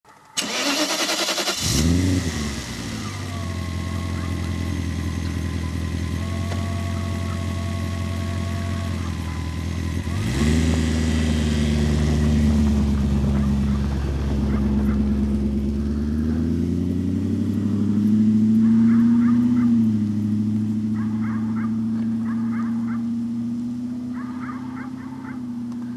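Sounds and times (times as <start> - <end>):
engine cranking: 0.3 - 4.3
engine idling and revving: 0.4 - 25.9.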